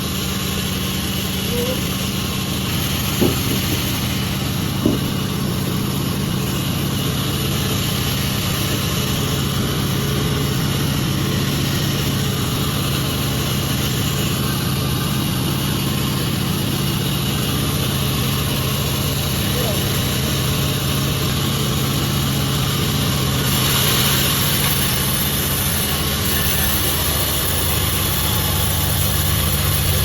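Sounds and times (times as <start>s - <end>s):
sawmill machinery running: 0.0s - 30.0s
sharp knocks: 3.1s - 4.0s, 4.8s - 5.4s.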